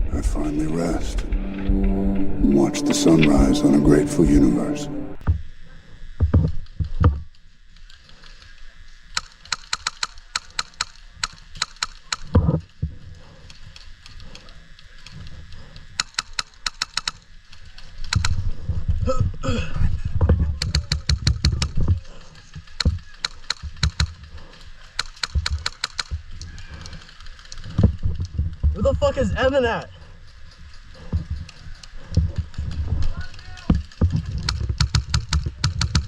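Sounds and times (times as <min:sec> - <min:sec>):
low rumble: 0:00.0 - 0:05.5
airsoft guns firing: 0:25.0 - 0:26.2.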